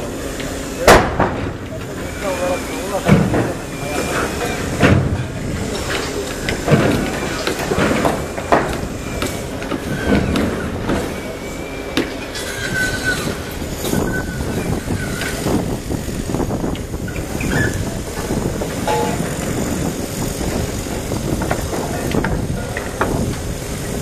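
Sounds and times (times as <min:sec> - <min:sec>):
excavator diesel engine running: 0:01.5 - 0:24.0
high metal squeals: 0:11.1 - 0:15.6, 0:17.0 - 0:20.4
metallic knocks: 0:18.8 - 0:19.5.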